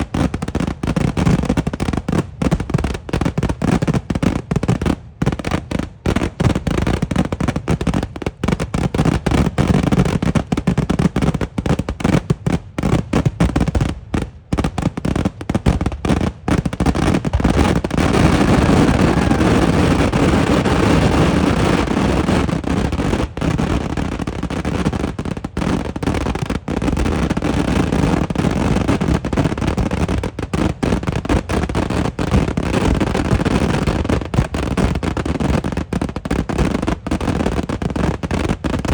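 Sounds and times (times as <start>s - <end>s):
rapid firework explosions: 12.6s - 33.6s.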